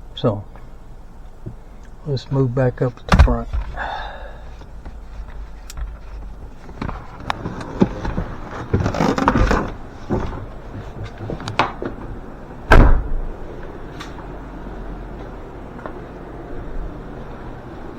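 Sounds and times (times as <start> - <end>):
rustling: 2.8 - 12.0
clicks and knocks in a car: 2.9 - 12.1
loud heavy thump: 3.1 - 4.0, 12.7 - 13.4.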